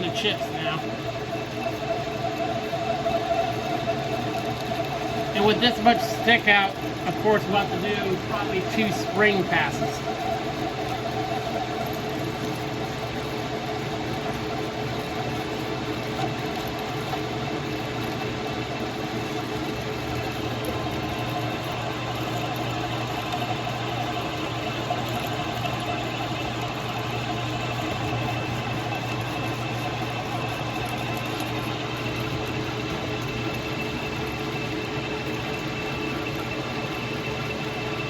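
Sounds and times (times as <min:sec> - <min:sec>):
metal lathe humming: 0:00.0 - 0:38.0.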